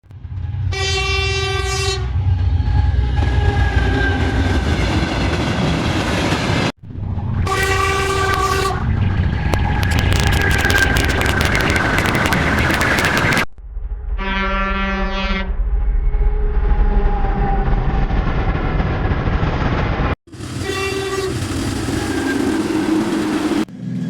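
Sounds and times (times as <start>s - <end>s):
train running noise: 0.1s - 13.5s, 17.0s - 24.0s
steam locomotive whistle: 0.7s - 4.7s, 7.4s - 8.9s, 20.3s - 23.7s.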